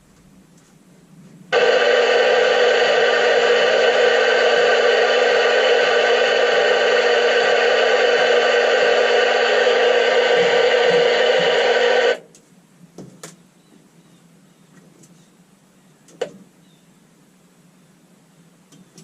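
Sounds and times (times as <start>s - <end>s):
radio static hiss: 1.5s - 12.2s.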